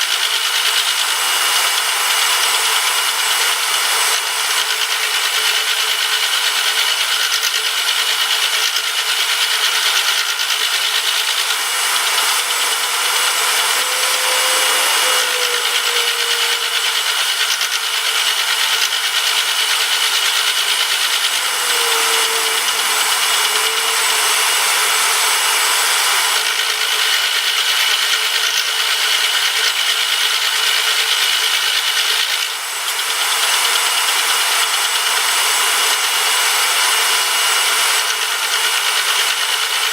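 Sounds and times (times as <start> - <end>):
power tool rasping on metal: 0.0 - 39.9.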